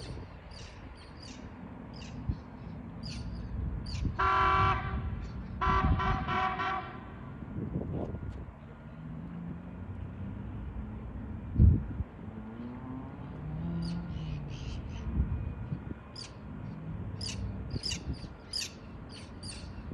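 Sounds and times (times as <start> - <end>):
horn blasts: 4.2 - 7.3
birds chirping: 16.2 - 19.9.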